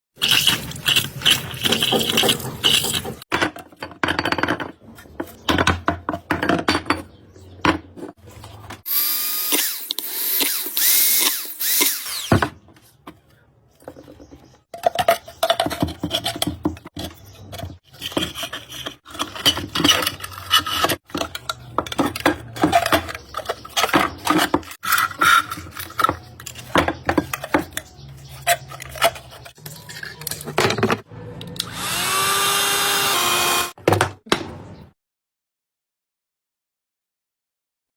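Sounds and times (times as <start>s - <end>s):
power tool noise: 8.9s - 12.5s, 31.3s - 33.8s
tool knocks and clicks: 33.5s - 34.7s.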